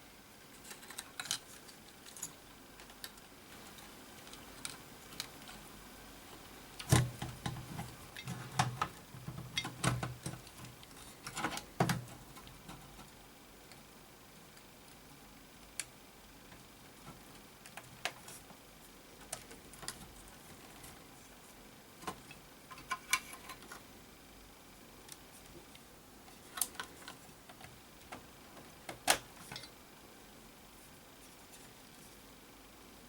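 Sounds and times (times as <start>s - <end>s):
small parts clicking and tapping: 0.5s - 5.7s, 6.3s - 13.9s, 14.5s - 18.6s, 19.2s - 21.0s, 22.0s - 23.9s, 25.1s - 29.8s.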